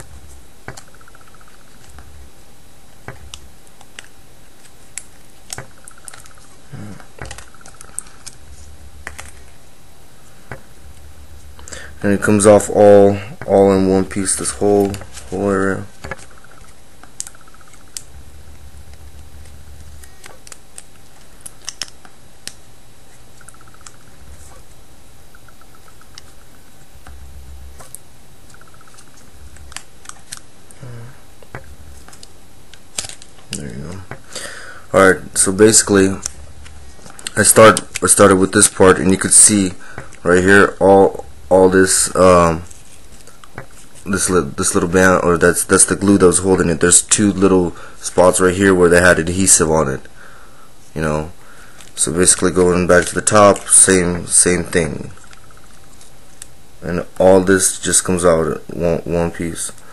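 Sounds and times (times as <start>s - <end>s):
plastic parts clicking apart: 20.0s - 22.6s, 31.5s - 33.6s.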